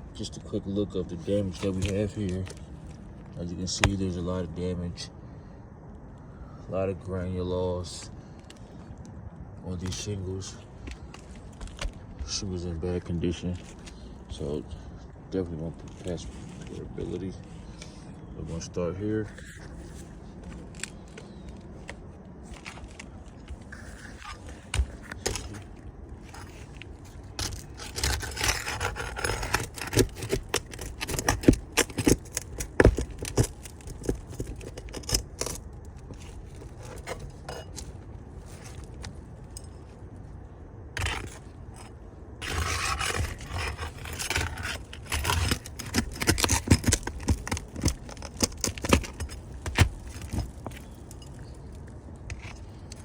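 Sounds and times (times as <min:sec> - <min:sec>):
shingles scraping: 0:00.2 - 0:04.3, 0:19.2 - 0:40.0, 0:40.9 - 0:53.0
sharp clicks of shingles: 0:01.2 - 0:04.3, 0:19.6 - 0:53.0.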